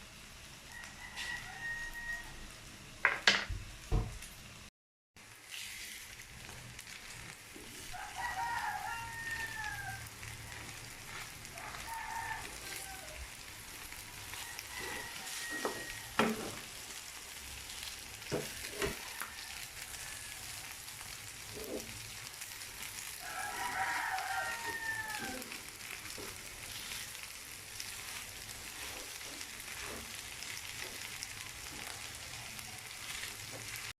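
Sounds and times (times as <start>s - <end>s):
rice sizzling in a pan: 0.0s - 34.0s
rooster crowing: 0.7s - 2.7s, 7.8s - 16.6s, 18.5s - 20.8s, 23.0s - 27.0s
utensil knocking on pan: 3.0s - 4.1s, 15.6s - 16.6s.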